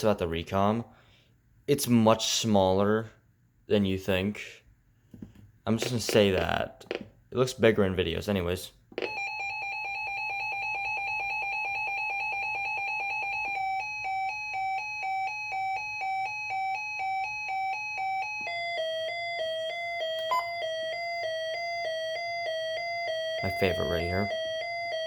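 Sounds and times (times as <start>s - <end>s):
electronic alert beeps: 20.0s - 20.7s.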